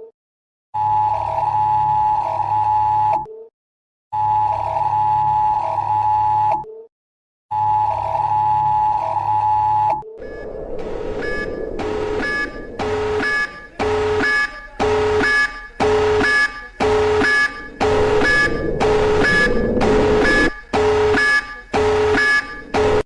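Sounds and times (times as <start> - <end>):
buzzy alarm beeps: 10.2 - 23.0.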